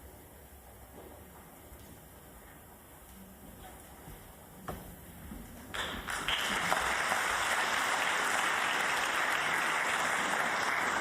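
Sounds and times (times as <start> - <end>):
audience applauding: 5.7 - 11.0.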